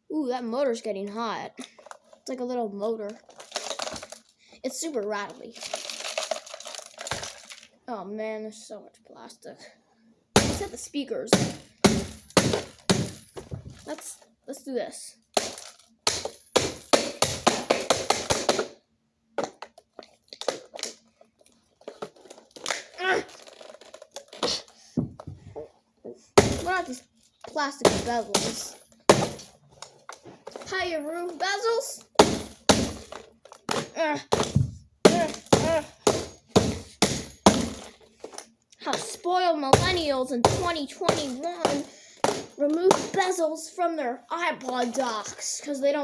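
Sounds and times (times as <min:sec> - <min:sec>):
loose plastic rattling: 0:03.1 - 0:04.3, 0:05.2 - 0:07.7, 0:19.4 - 0:25.6, 0:26.4 - 0:39.2
blows smashing plastic radio: 0:10.4 - 0:10.8, 0:11.4 - 0:14.0, 0:15.3 - 0:18.8, 0:22.0 - 0:25.0, 0:26.4 - 0:39.2, 0:39.8 - 0:43.4.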